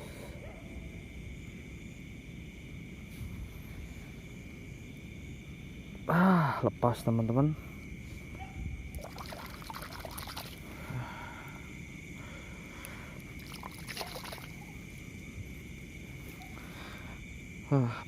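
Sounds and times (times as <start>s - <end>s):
high insect drone: 0.0s - 18.0s
water trickling and splashing: 8.9s - 10.6s, 13.2s - 14.8s.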